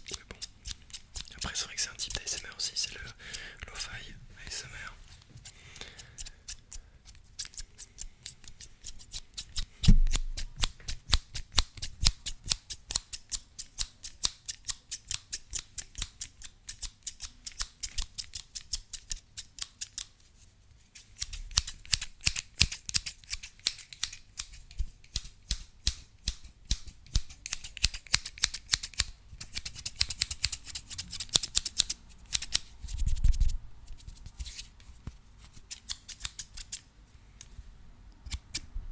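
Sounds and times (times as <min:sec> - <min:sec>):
scissors snipping: 0:00.0 - 0:03.2, 0:05.4 - 0:20.1, 0:21.0 - 0:34.7, 0:35.5 - 0:36.8, 0:38.2 - 0:38.7
low thump: 0:09.9 - 0:10.4.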